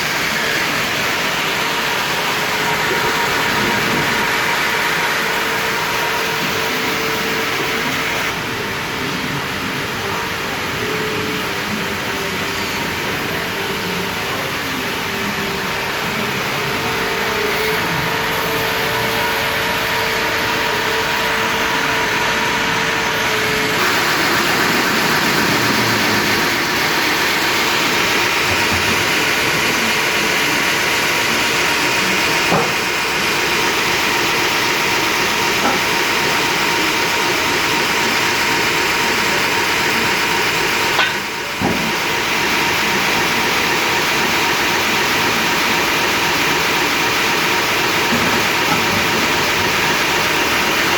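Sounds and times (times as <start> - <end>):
sawmill machinery running: 0.0 - 50.9.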